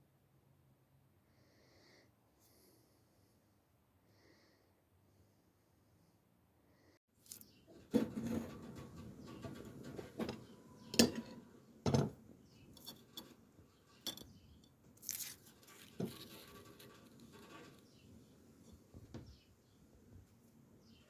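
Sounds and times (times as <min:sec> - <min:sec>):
light metal clinks and knocks: 0:08.1 - 0:17.8.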